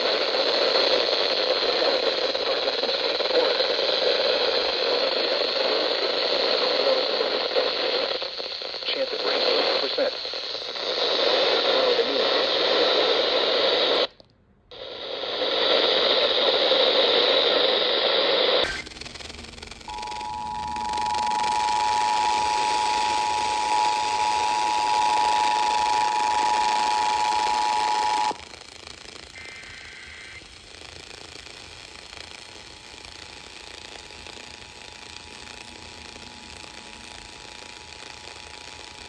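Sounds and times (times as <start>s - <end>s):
radio static hiss: 0.0s - 14.1s, 14.7s - 39.0s.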